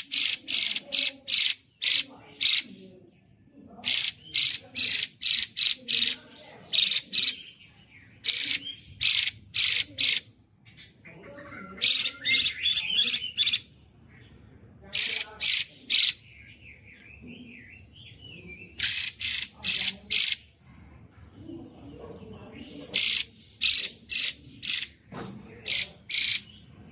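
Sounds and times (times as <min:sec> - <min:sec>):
bird calling ringing notes: 0:11.2 - 0:13.8.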